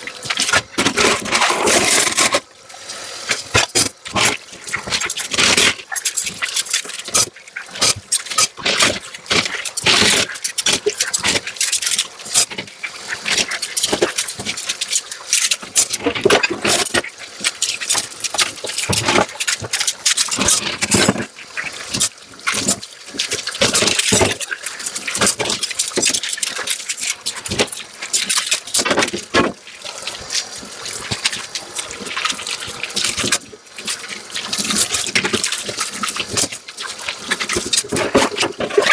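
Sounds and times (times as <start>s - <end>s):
water running: 0.0s - 38.9s
scrubbing: 0.3s - 2.4s.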